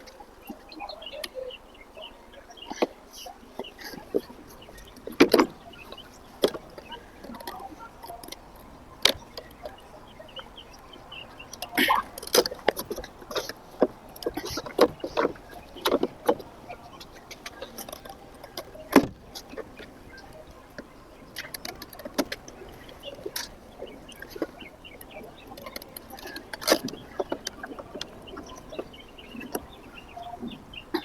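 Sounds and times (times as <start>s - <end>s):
hand tools clicking and knocking: 11.5s - 20.8s.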